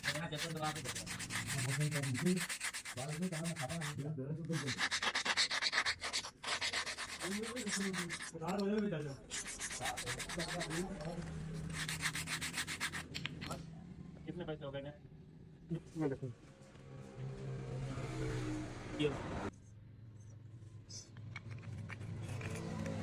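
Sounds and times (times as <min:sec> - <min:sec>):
rhythmic scraping and rubbing strokes: 0:00.0 - 0:13.4.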